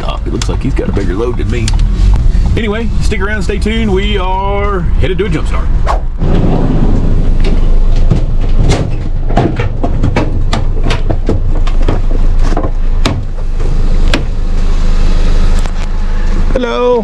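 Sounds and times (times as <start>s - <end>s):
vehicle low rumble: 0.0s - 8.7s.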